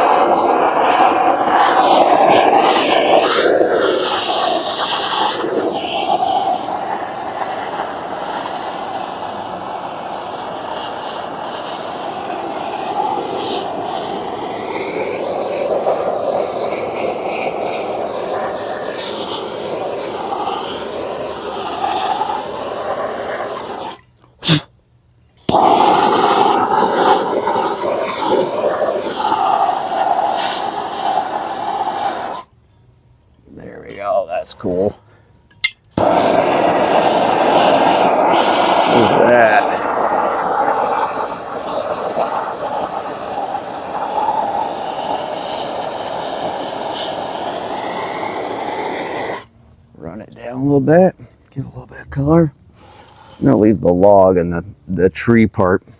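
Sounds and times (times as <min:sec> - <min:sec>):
propane torch roaring: 0:00.0 - 0:24.7, 0:25.4 - 0:32.7, 0:33.4 - 0:55.8
torch igniter click: 0:25.4 - 0:26.2.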